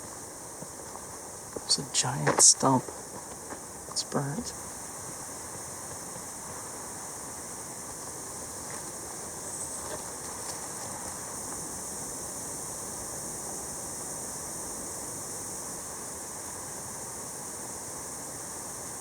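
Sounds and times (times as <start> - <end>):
forest ambience hiss: 0.0 - 19.0.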